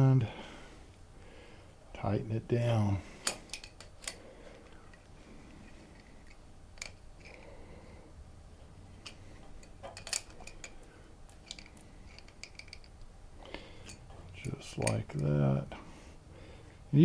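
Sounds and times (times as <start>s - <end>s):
metallic clicks and clinks: 3.2s - 5.1s, 6.0s - 7.6s, 9.0s - 15.6s.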